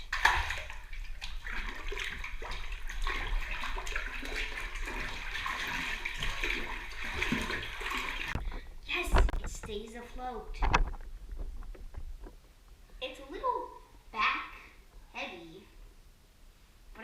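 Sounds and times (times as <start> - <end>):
bathtub water rushing and splashing: 0.0 - 9.1.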